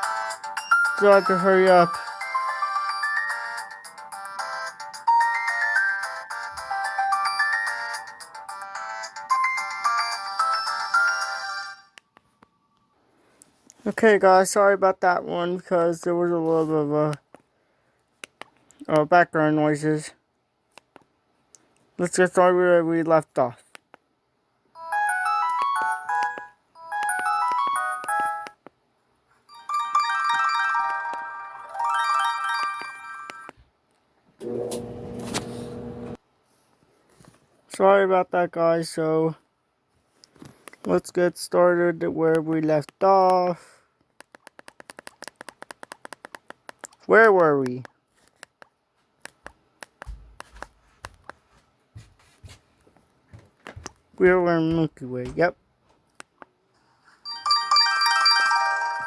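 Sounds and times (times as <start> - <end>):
phone ringtone melody: 0.0 - 12.0, 24.8 - 28.6, 29.5 - 33.5, 57.3 - 59.0.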